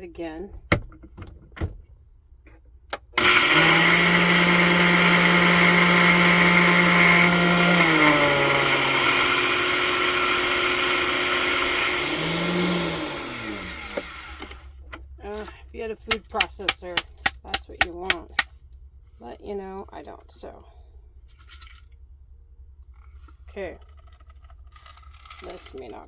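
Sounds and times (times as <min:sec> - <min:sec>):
blender grinding: 0:03.0 - 0:14.7, 0:16.0 - 0:18.6, 0:24.8 - 0:26.0.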